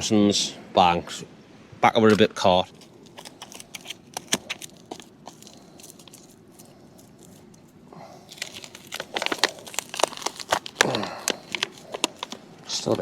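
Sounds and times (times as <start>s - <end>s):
frozen packet crackling: 2.7s - 13.0s.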